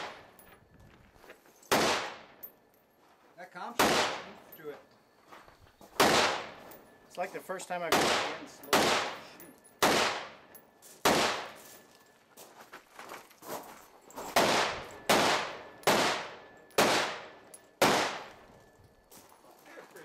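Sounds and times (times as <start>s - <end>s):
rifle shots: 1.7s - 2.4s, 3.8s - 4.4s, 6.0s - 6.7s, 7.9s - 11.6s, 14.4s - 18.4s.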